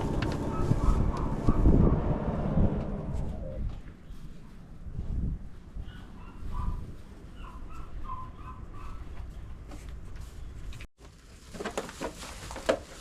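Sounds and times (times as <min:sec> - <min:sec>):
wind rumble on microphone: 0:00.0 - 0:08.4
rustling and knocking: 0:11.0 - 0:13.0.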